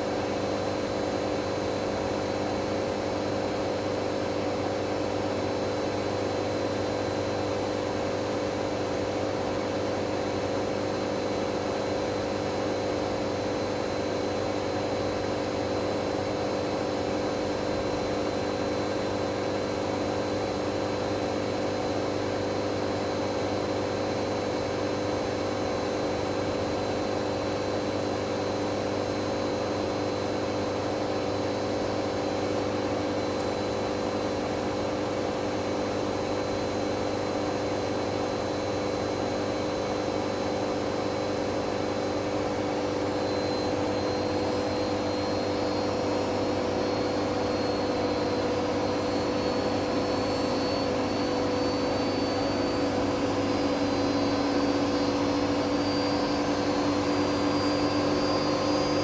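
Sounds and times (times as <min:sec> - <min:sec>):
washing machine spinning: 0:00.0 - 0:59.0
faint high whine rising: 0:28.6 - 0:59.0.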